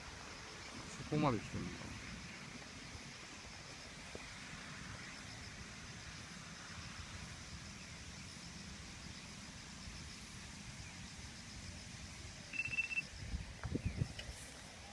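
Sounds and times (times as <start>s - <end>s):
insects chirping: 0.0s - 14.9s.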